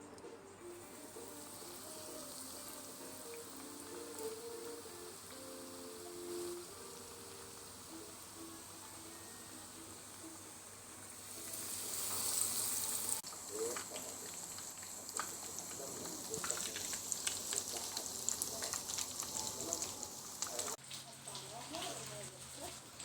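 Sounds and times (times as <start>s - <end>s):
chicken frying in hot oil: 0.6s - 23.0s.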